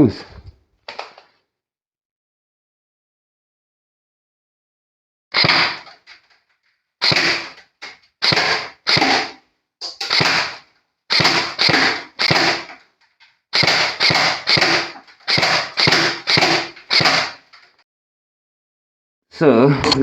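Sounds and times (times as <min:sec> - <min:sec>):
airsoft rifle shots popping: 0:05.4 - 0:06.0.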